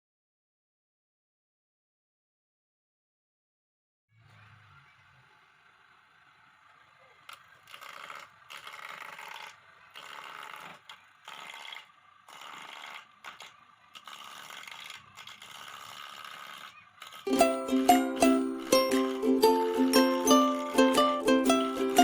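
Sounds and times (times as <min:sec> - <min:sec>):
wood lathe turning: 0:04.3 - 0:22.0
cutting tool scraping wood: 0:07.3 - 0:21.0.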